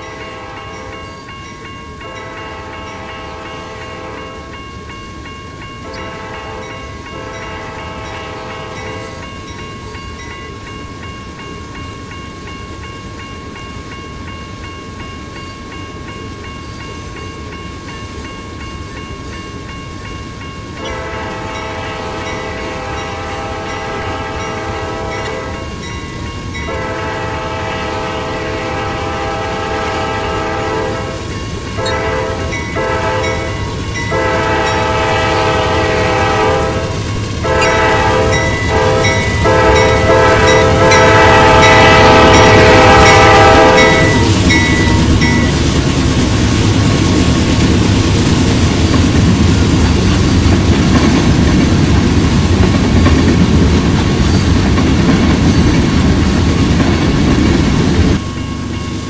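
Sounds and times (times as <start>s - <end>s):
train rumble: 0.0s - 59.0s
locomotive horn blasts: 0.1s - 1.0s, 2.1s - 4.5s, 5.8s - 9.2s, 20.8s - 25.7s, 26.6s - 45.5s.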